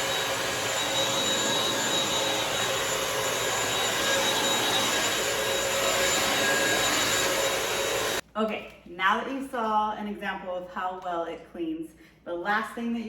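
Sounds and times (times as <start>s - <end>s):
floor cleaner suction motor: 0.0s - 8.2s.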